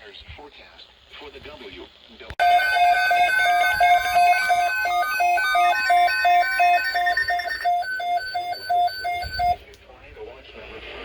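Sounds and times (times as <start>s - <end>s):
rapid electronic alarm beeping: 2.4s - 9.6s
steady electronic tones: 2.4s - 9.6s.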